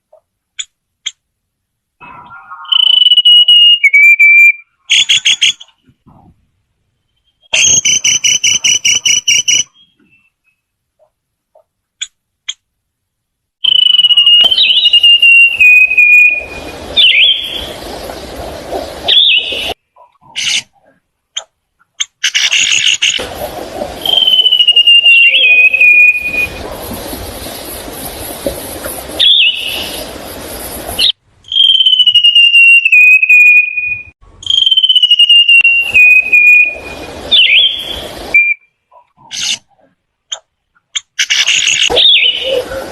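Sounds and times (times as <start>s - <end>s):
bird whistling song: 2.3s - 5.7s, 13.6s - 18.0s, 19.0s - 19.8s, 24.0s - 26.7s, 29.2s - 30.1s, 31.0s - 38.6s, 41.5s - 42.8s.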